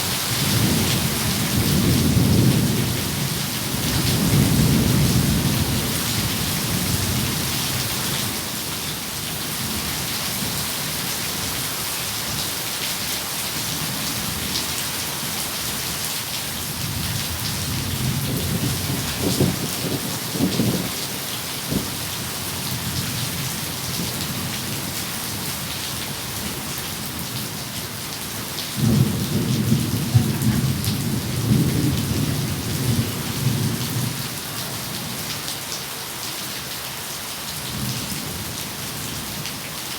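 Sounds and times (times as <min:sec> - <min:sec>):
heavy rain: 0:00.0 - 0:39.9
rolling thunder: 0:17.6 - 0:21.0.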